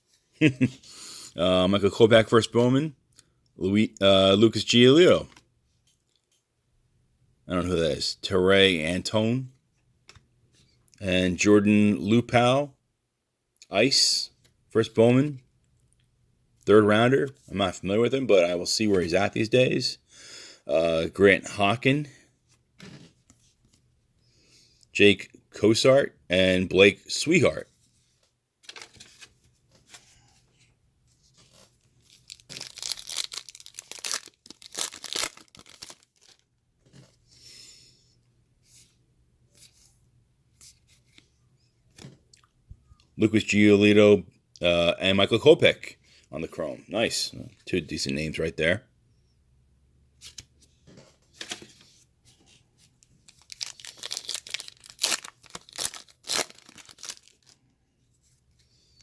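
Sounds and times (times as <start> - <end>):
soft handling rustles: 27.7 - 37.3
foil wrapper tearing and crinkling: 32.1 - 36.4, 53.3 - 57.6.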